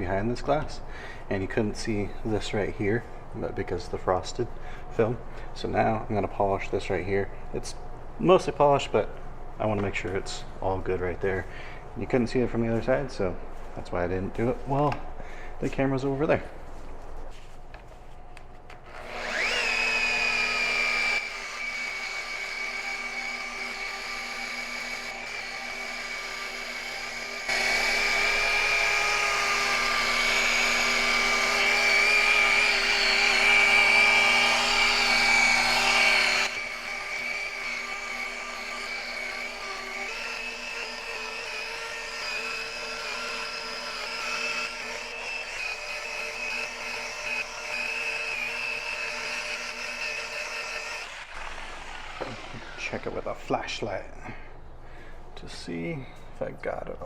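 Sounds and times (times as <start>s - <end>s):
electric polisher whining: 18.8s - 53.2s.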